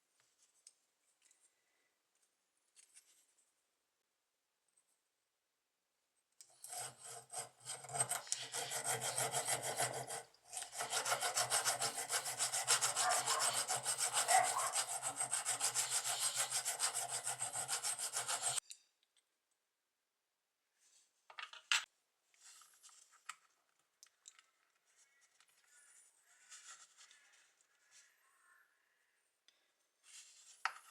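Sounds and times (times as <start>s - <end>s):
abrasive rubbing strokes: 6.7s - 18.6s.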